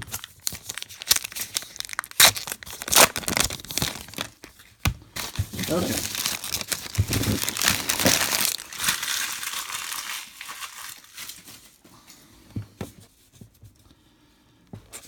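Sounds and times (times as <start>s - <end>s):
wrapper crinkling: 0.0s - 4.6s, 5.2s - 11.8s.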